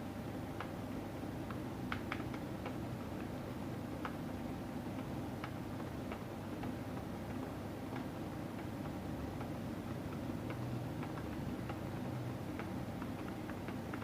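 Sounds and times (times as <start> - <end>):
steady low hum: 0.0 - 14.0
mechanical keyboard typing: 4.9 - 14.0.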